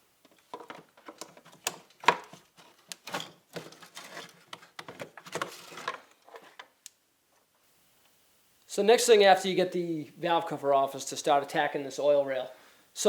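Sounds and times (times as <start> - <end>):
rustling and scraping: 0.3 - 7.6.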